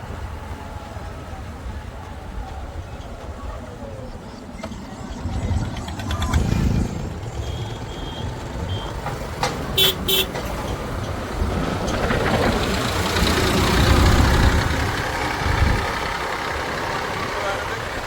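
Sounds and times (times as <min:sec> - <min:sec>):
heavy diesel engine working: 0:00.0 - 0:18.0
short horn toots: 0:09.8 - 0:10.4.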